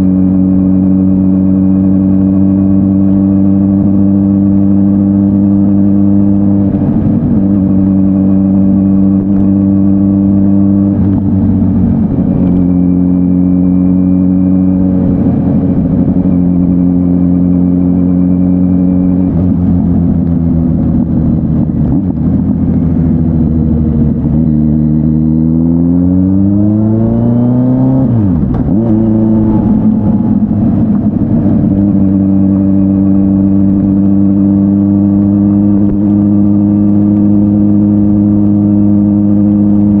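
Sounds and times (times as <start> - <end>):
motorcycle engine cruising: 0.0 - 40.0.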